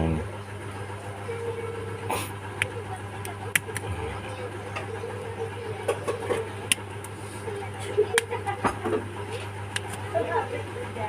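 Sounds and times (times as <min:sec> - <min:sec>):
steady low hum: 0:00.0 - 0:11.0
sharp plastic clicks: 0:09.7 - 0:10.0.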